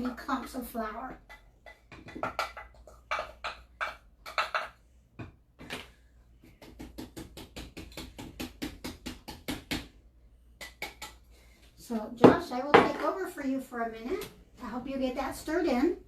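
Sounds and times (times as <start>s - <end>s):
batter stirred in mixing bowl: 0.0s - 4.9s.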